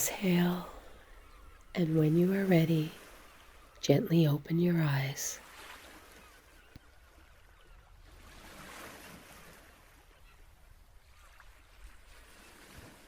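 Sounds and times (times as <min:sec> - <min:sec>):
ocean waves washing on shore: 0:00.0 - 0:13.0.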